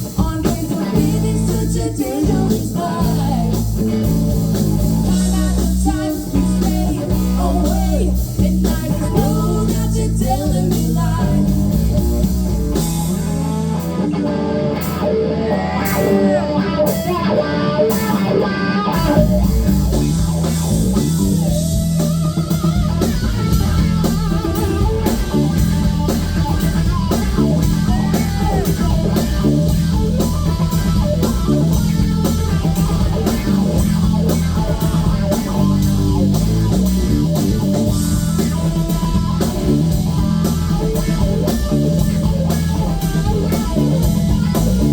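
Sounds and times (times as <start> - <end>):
bass guitar: 0.0 - 44.9
drums: 0.0 - 44.9
lead electric guitar bent notes: 11.2 - 44.9.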